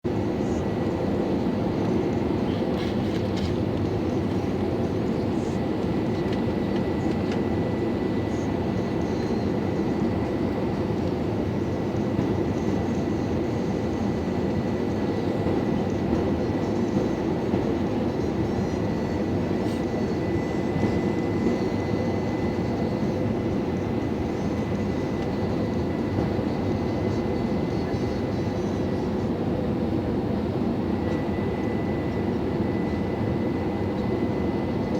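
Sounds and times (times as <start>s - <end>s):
engine and airflow rumble: 0.1s - 34.9s.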